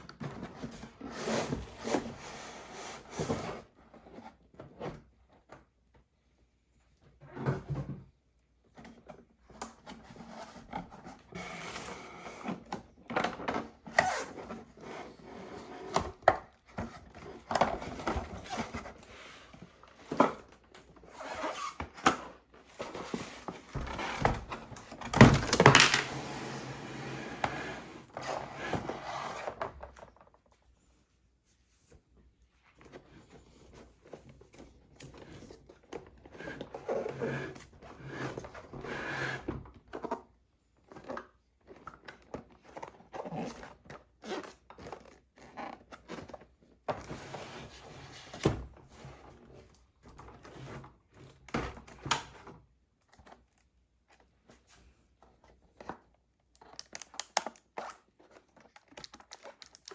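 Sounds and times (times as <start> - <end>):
packaging rustling: 56.6 - 59.9.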